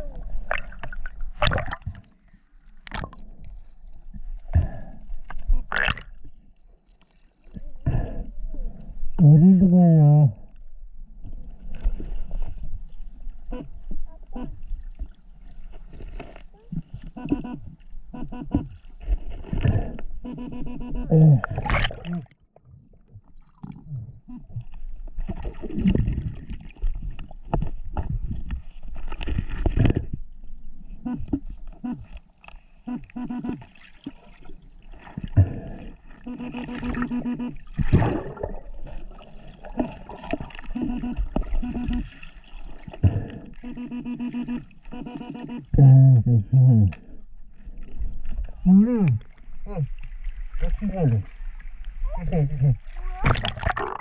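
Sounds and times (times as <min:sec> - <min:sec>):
water splashing in a stream: 0:00.0 - 0:03.5, 0:21.4 - 0:23.9, 0:24.8 - 0:30.1, 0:33.2 - 0:35.4, 0:36.1 - 0:43.3, 0:52.8 - 0:54.0
stream water sloshing and gurgling: 0:00.0 - 0:09.2, 0:10.4 - 0:45.8, 0:46.9 - 0:54.0.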